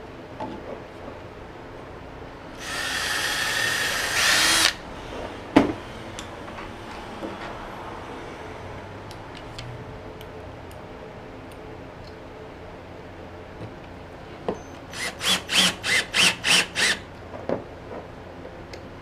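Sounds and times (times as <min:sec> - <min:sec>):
electric drill running: 0:02.6 - 0:04.8, 0:14.9 - 0:17.0.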